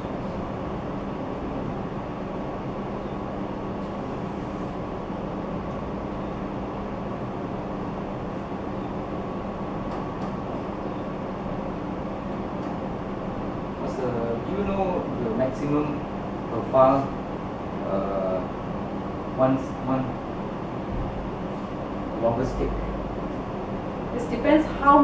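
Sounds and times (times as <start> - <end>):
background hum: 0.0 - 25.0.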